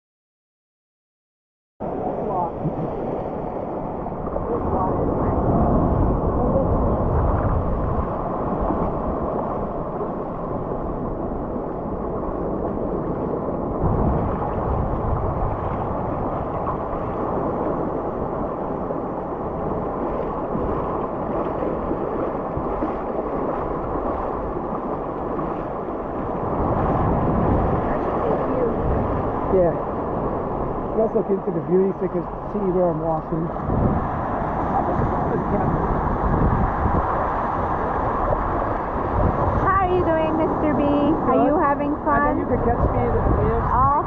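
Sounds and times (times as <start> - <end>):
ocean surf washing: 1.8 - 44.0
wind on microphone: 1.8 - 44.0.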